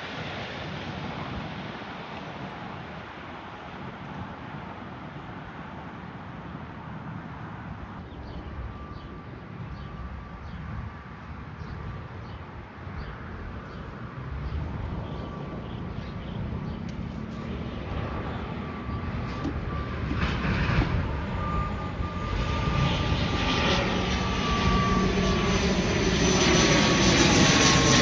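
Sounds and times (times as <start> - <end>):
low wind rumble: 0.0 - 28.0
small birds chirping: 8.0 - 10.8, 11.6 - 21.0
jet engine rushing: 14.0 - 28.0.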